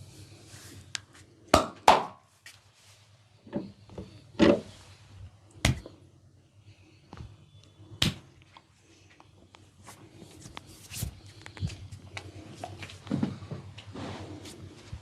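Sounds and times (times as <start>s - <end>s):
massage smacks and cracks: 5.6s - 5.9s, 8.0s - 8.4s.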